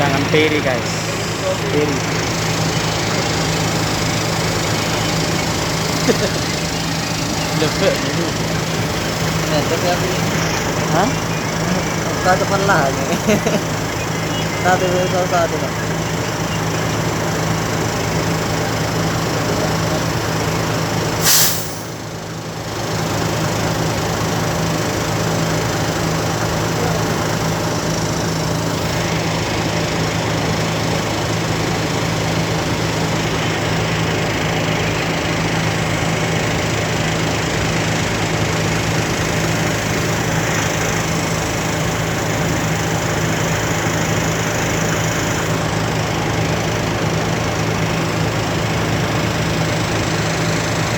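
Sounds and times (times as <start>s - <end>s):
ferry engine humming: 0.0s - 50.9s
short loud hiss: 21.2s - 22.0s.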